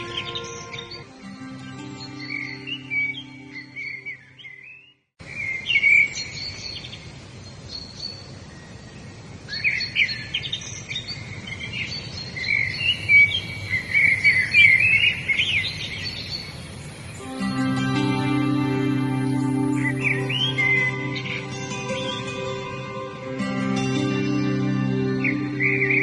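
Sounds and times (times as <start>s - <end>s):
birds chirping and trilling: 0.0s - 26.0s
steady background hiss: 5.2s - 26.0s.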